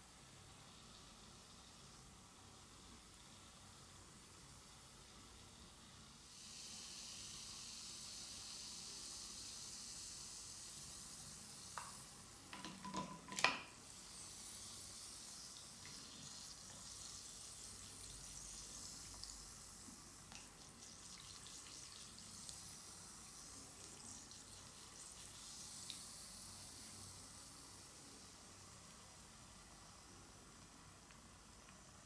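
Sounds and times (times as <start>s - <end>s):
bath bomb fizzing in water: 13.8s - 29.5s.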